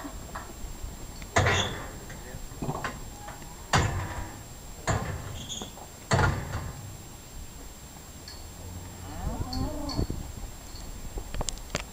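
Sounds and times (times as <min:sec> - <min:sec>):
cattle knocking against steel rails: 0:01.3 - 0:07.0.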